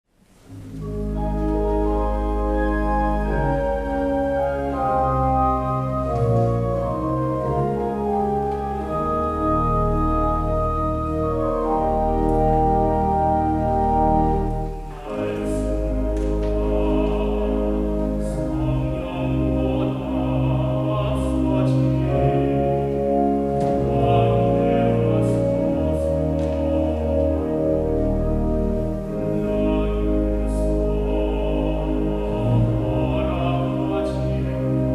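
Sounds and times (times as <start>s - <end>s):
church organ chords: 0.4s - 34.9s
classical solo voice singing: 1.0s - 34.9s.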